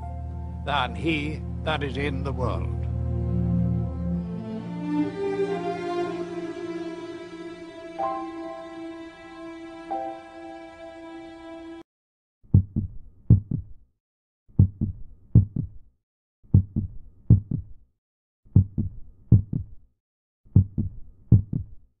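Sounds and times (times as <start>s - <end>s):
background music: 0.0s - 11.8s
heartbeat thuds: 12.5s - 13.8s, 14.6s - 15.8s, 16.5s - 17.8s, 18.6s - 19.8s, 20.6s - 21.8s.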